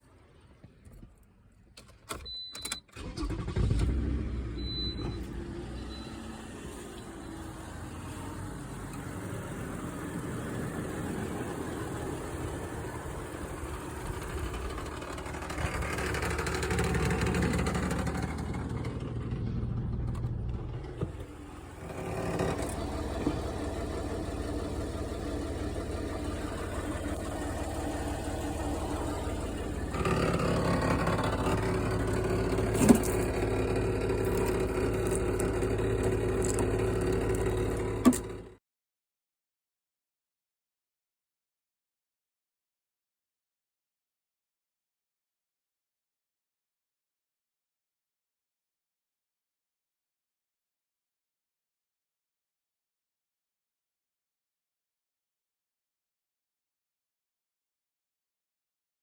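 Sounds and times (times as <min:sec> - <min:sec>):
car engine starting and running: 0:01.7 - 0:38.6.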